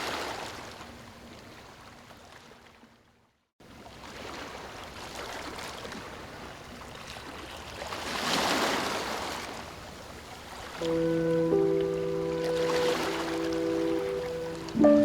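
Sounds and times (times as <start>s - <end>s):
ocean waves washing ashore: 3.7s - 15.0s.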